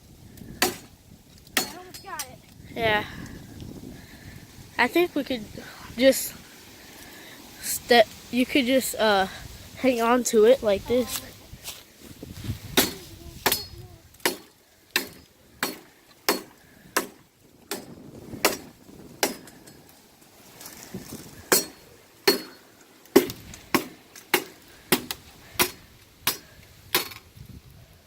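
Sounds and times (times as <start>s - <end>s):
chopping blows on wood: 0.6s - 0.9s, 12.7s - 19.5s, 23.2s - 27.2s.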